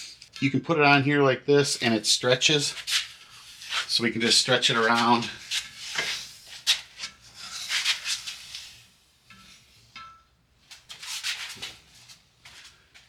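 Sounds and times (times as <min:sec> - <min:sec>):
tape rustling and rubbing: 0:02.6 - 0:09.7, 0:10.7 - 0:12.8.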